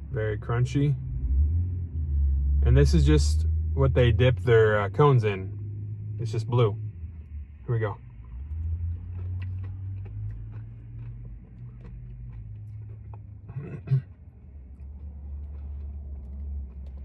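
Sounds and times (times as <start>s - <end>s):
car engine idling: 0.0s - 17.0s
person chewing crunchy food: 8.2s - 17.0s.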